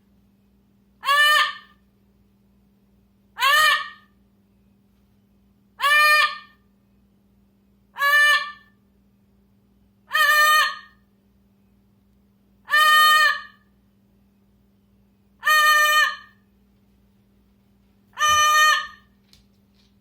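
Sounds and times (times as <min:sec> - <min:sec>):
faint steady hum: 0:00.0 - 0:20.0
bird calling loudly: 0:01.0 - 0:01.8, 0:03.4 - 0:04.1, 0:05.8 - 0:06.6, 0:08.0 - 0:08.7, 0:10.1 - 0:11.0, 0:12.7 - 0:13.6, 0:15.4 - 0:16.4, 0:18.2 - 0:19.1.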